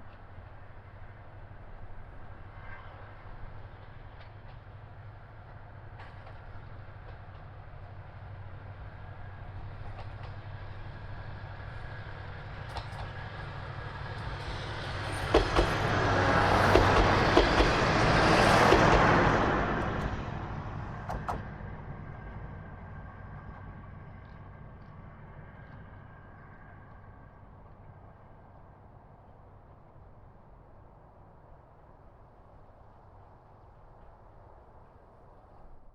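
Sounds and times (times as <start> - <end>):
diesel railcar engine hum: 0.0 - 35.9
wheels clicking over rail joints: 12.4 - 15.9, 16.6 - 21.6.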